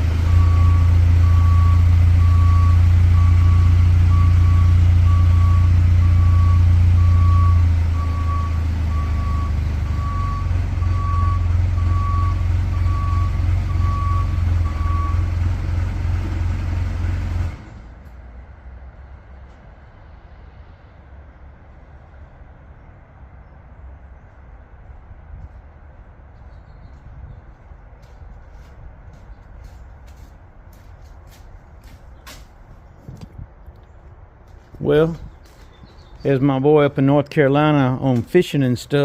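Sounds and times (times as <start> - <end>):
heavy machine engine: 0.0 - 19.6
backup alarm beeping: 0.2 - 15.3.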